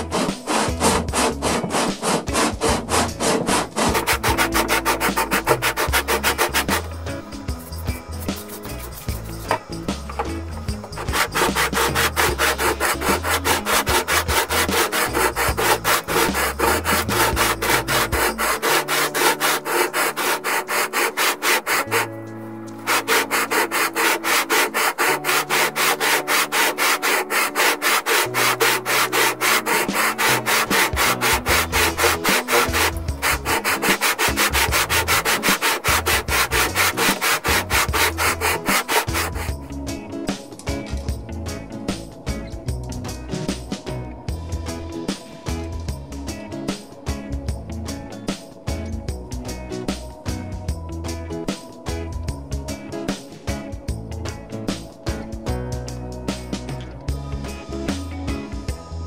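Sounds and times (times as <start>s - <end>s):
scratchy rhythmic strokes: 0.0s - 40.5s
bass line: 2.5s - 19.1s, 53.6s - 59.0s.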